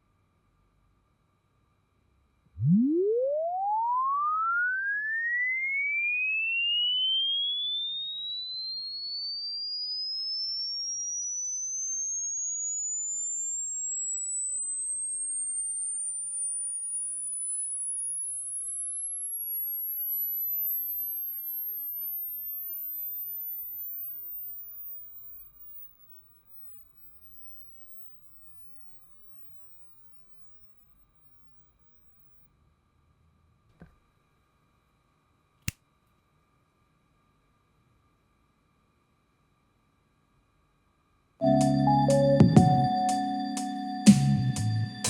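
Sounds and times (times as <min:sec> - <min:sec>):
rising sine-wave test sweep: 0:02.5 - 0:32.3, 0:41.4 - 0:45.0.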